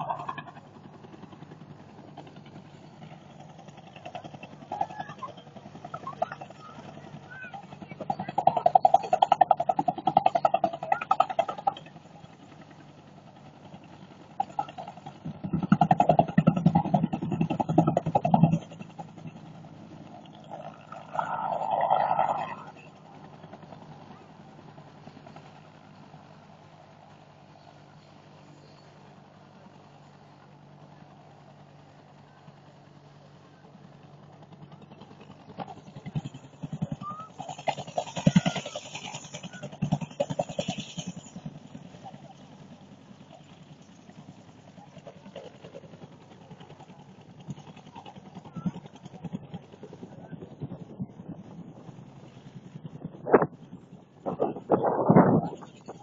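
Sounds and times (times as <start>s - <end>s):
helicopter rotor beating: 0.0s - 56.0s
helicopter rotor blade thumps: 52.6s - 56.0s.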